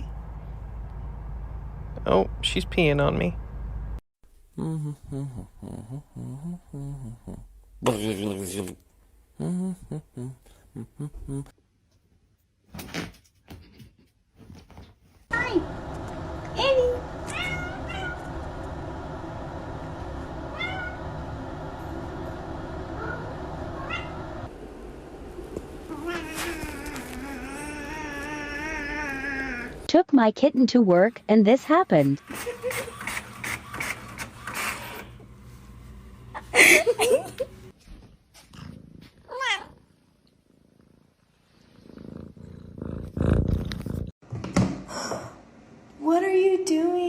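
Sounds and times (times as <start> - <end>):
cat meowing: 17.3 - 18.4, 20.5 - 21.0, 23.0 - 24.3.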